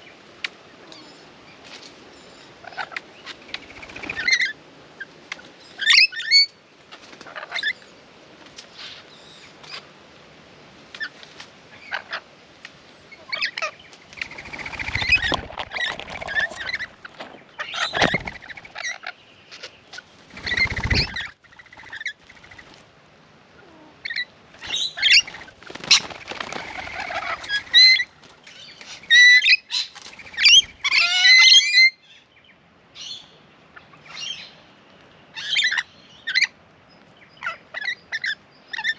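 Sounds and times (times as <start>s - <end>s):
lorikeets chattering and screeching: 13.1s - 19.3s, 19.9s - 22.7s, 24.0s - 28.1s, 28.7s - 32.0s.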